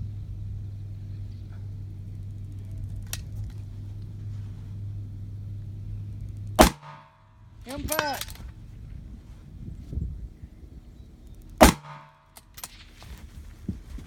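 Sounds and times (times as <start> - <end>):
steady low hum: 0.0 - 14.0
loud rifle shot: 6.6 - 7.2, 11.6 - 12.4.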